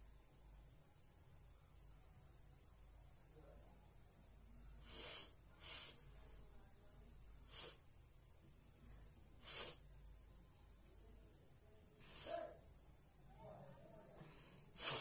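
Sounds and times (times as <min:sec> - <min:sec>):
woman sniffing sharply: 0:04.8 - 0:06.0, 0:07.5 - 0:07.8, 0:09.4 - 0:09.8, 0:12.0 - 0:12.5, 0:14.7 - 0:15.0.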